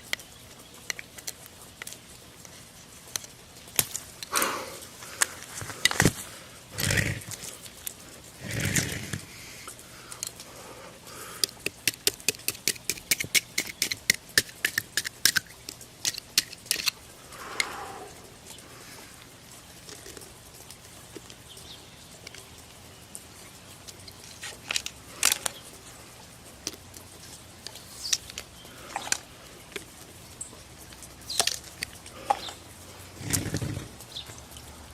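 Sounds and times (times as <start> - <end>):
tools tapping on wood: 11.4 - 16.9.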